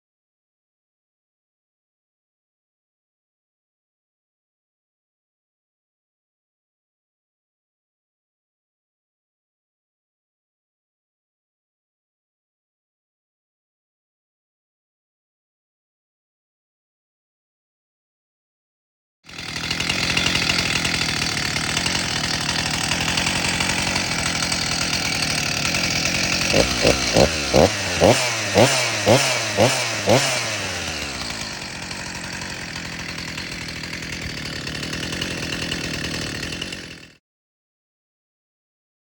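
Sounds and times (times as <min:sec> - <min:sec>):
chainsaw running with throttle blips: 0:19.3 - 0:37.2.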